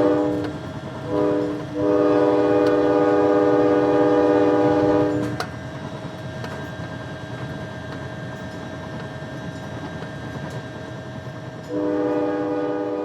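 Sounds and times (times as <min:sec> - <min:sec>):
train horn chord: 0:00.0 - 0:05.4, 0:11.7 - 0:13.0
train rumbling past: 0:00.0 - 0:13.0.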